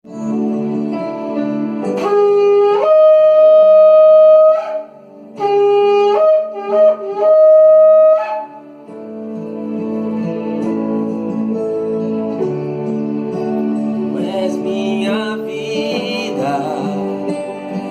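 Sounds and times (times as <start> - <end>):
soft music pad: 0.1 - 17.9
shofar blasts: 1.8 - 8.8.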